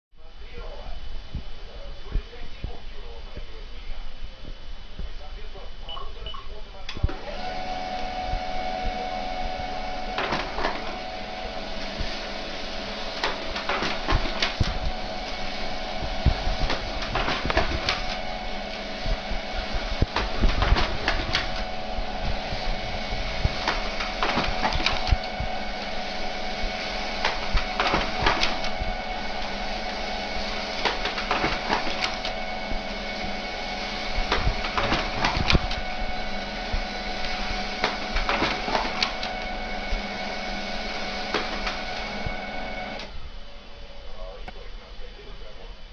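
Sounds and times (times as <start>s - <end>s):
printer humming: 5.2s - 45.9s.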